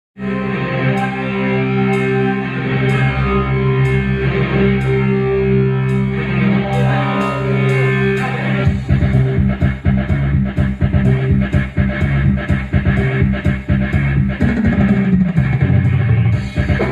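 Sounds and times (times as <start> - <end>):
keyboard guitar voice melody: 0.2 - 8.9
held keyboard chords: 0.2 - 16.9
rhythmic keyboard accompaniment: 0.2 - 16.9.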